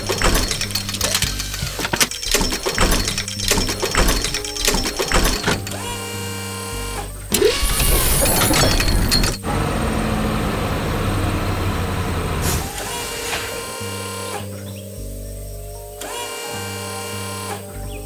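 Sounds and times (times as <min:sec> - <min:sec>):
vehicle engine running: 0:07.3 - 0:12.7.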